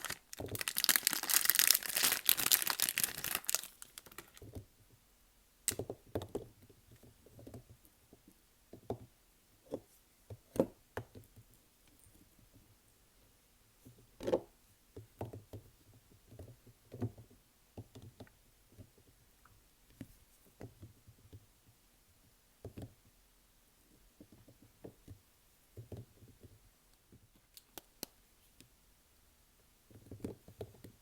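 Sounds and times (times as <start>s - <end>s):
soap bars knocking and tapping: 5.7s - 11.5s, 22.6s - 23.1s, 24.1s - 27.3s.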